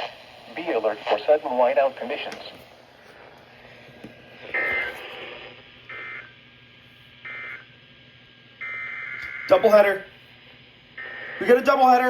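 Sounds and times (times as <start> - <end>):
warbling data tones from radio: 0.0 - 2.6, 4.4 - 6.4, 8.6 - 10.1, 11.0 - 12.0.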